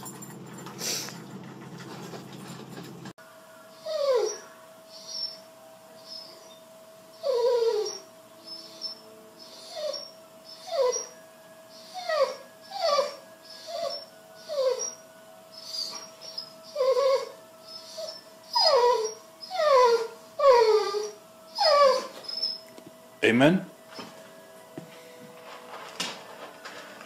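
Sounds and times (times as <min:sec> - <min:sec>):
dog whimpering: 0:03.7 - 0:06.6, 0:07.2 - 0:22.7.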